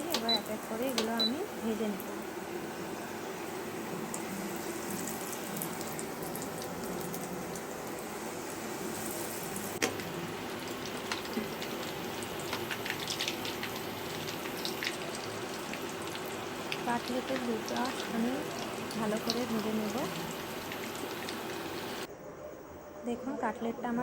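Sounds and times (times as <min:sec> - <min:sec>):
fish deep-frying in oil: 0:03.2 - 0:22.1
small crackles: 0:09.0 - 0:21.5.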